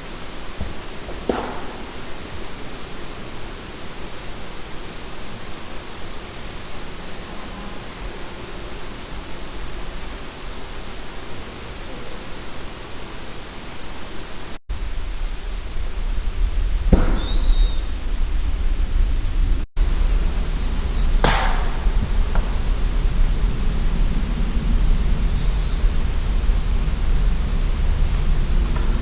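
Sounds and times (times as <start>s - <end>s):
steady hiss: 0.0s - 29.0s
low rumble: 14.7s - 29.0s.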